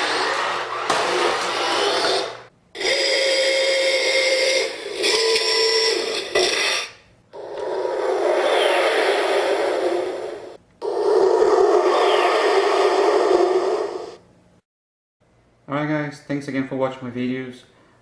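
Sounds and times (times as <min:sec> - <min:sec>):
toy jet whirring: 0:00.0 - 0:14.2.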